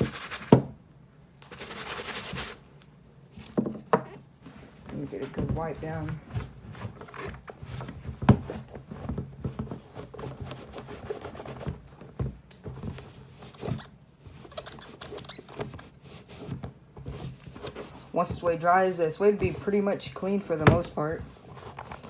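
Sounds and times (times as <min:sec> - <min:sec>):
cloth wiping a sneaker: 0:09.8 - 0:11.9, 0:12.9 - 0:20.3.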